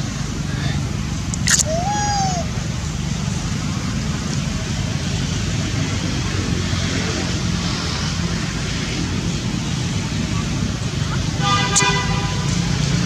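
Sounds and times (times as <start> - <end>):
road traffic rushing: 0.0 - 13.0.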